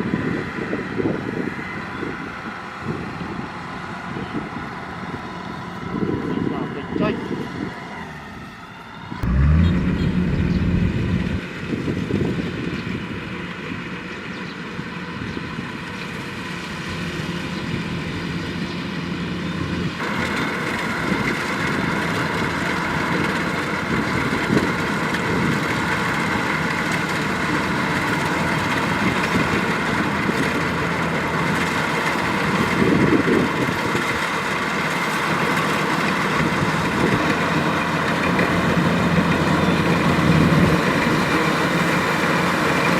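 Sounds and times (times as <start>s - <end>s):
combine harvester engine running: 0.0s - 42.9s.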